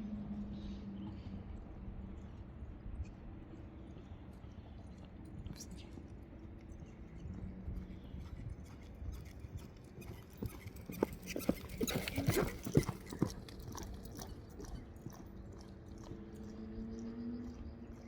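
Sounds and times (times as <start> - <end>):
horse hooves clopping: 5.0 - 18.0.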